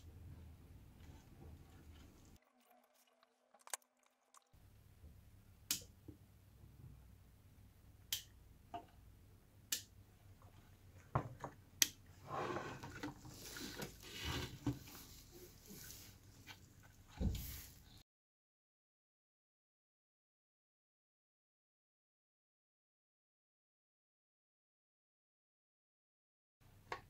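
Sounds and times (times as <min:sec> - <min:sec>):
rustling and scraping: 0:12.2 - 0:18.0.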